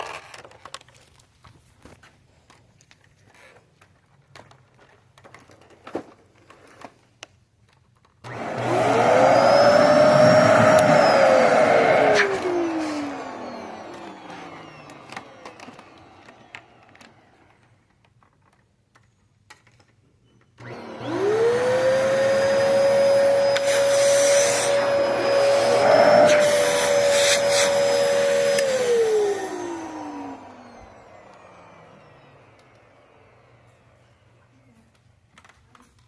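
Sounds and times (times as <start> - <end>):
vacuum cleaner motor whine: 8.2 - 17.9, 20.6 - 35.0.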